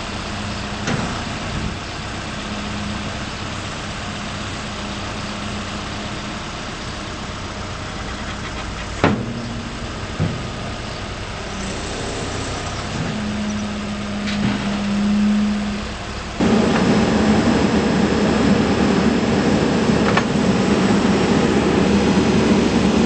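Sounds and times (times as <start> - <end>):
diesel engine idling: 0.0 - 23.0
steady hum: 7.8 - 23.0
sharp clunks: 8.3 - 11.2.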